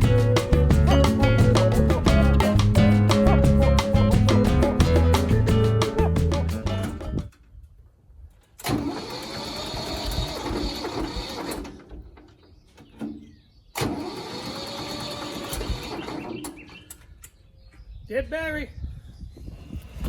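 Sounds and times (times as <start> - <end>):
engine starter cranking: 8.6 - 12.3, 13.8 - 17.0.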